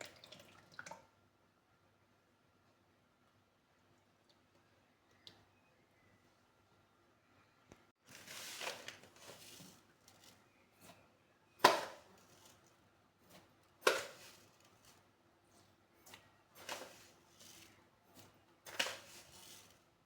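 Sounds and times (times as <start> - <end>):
rustling and scraping: 8.0 - 20.0.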